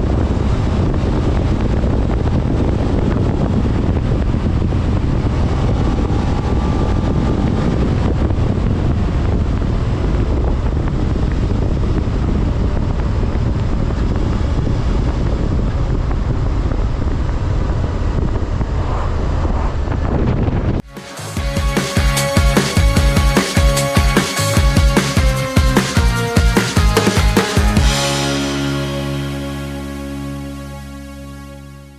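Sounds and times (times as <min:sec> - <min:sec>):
wind buffeting microphone: 0:00.0 - 0:20.8
motorcycle engine running: 0:20.8 - 0:30.0.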